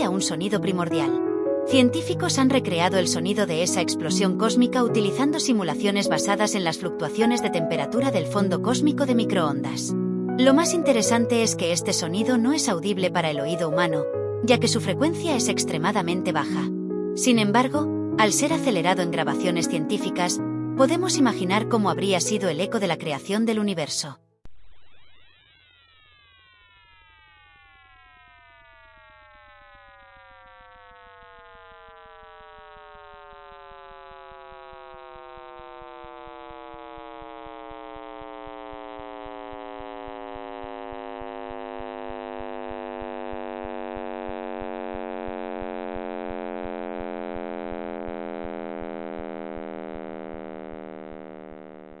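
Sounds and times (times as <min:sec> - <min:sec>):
faint low buzz: 0:26.0 - 0:52.0.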